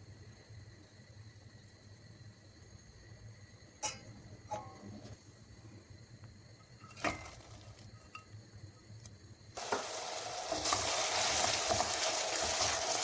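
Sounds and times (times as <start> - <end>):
food sizzling in hot oil: 9.6 - 13.0.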